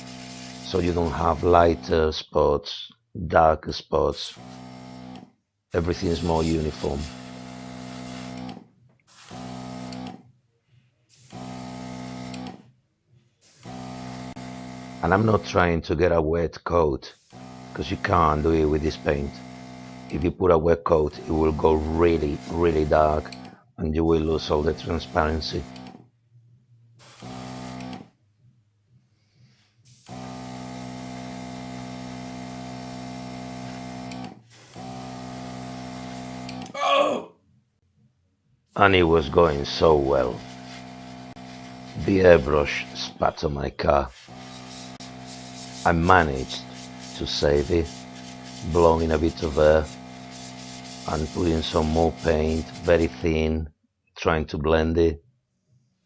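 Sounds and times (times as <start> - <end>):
airbrush air hissing: 0.0 - 1.8, 4.2 - 5.0, 5.8 - 8.4, 9.1 - 9.9, 13.4 - 15.2, 29.9 - 36.5, 38.8 - 53.2
compressor humming: 0.0 - 1.9, 4.2 - 5.1, 5.7 - 8.6, 38.8 - 53.2.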